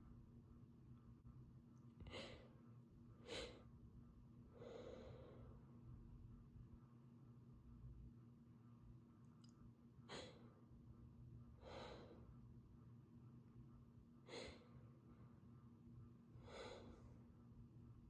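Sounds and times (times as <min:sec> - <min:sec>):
woman breathing: 0:02.0 - 0:02.6, 0:03.2 - 0:03.7, 0:04.5 - 0:05.6, 0:10.1 - 0:10.6, 0:11.6 - 0:12.4, 0:14.2 - 0:14.9, 0:16.4 - 0:17.3.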